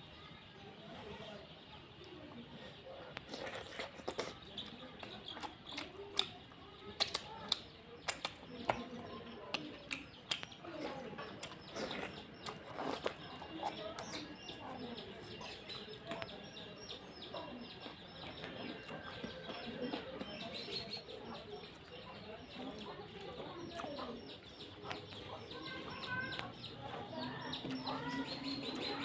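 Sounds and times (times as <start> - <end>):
chewing and lip-smacking: 2.2 - 29.0.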